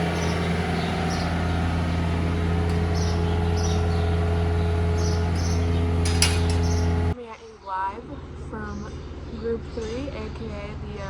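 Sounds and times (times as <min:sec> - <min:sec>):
farm machine engine running: 0:00.0 - 0:07.2.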